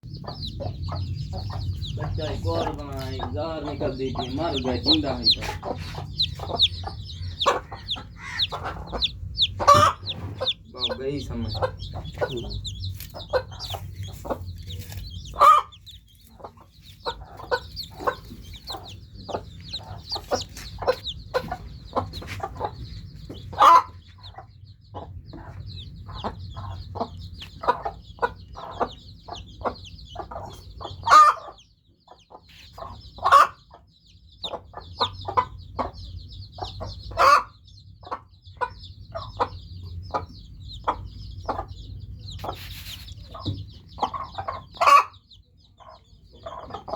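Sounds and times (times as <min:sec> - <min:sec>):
steady low hum: 0:00.0 - 0:31.1
chicks peeping: 0:00.0 - 0:46.9
clucking calls: 0:00.1 - 0:46.9.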